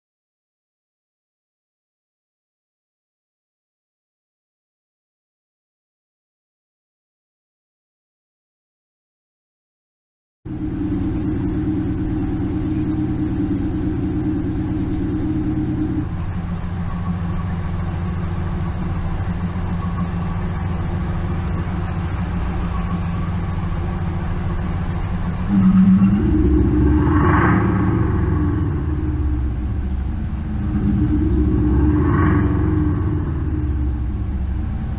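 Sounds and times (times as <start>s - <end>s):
simulated engine idle: 10.5s - 34.9s.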